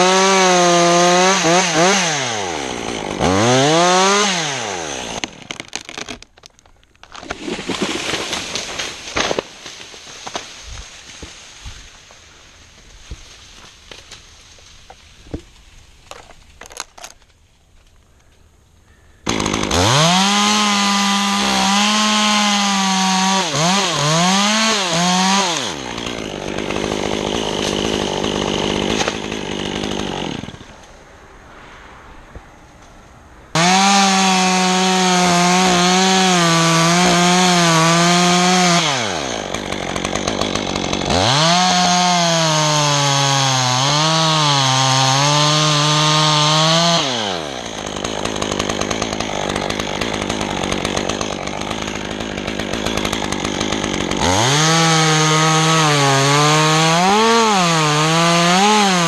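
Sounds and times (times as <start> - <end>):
chainsaw revving: 0.0 - 6.1, 19.2 - 30.9, 33.5 - 59.0.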